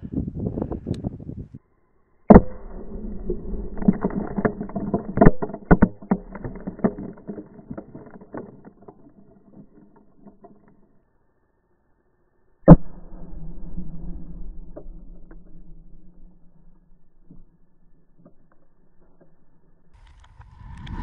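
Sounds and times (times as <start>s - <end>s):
debris knocking and clattering: 3.8s - 10.8s.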